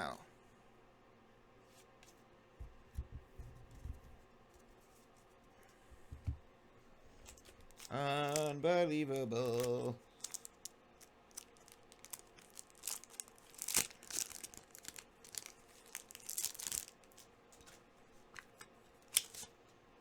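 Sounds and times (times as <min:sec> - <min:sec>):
cards scraping: 0:07.1 - 0:10.6
card pack wrapper tearing and crinkling: 0:07.2 - 0:17.3, 0:19.1 - 0:19.5.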